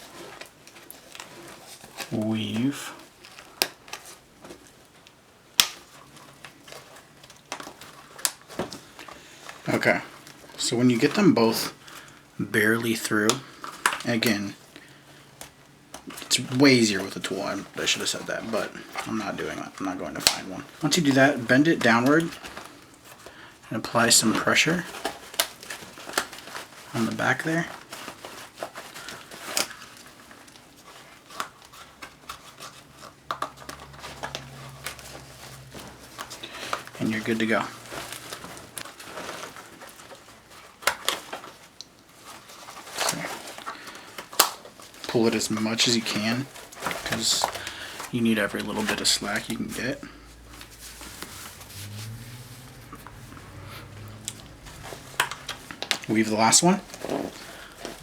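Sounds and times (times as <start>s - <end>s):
straps rustling: 0.0s - 58.0s
faint low hum: 46.0s - 58.0s.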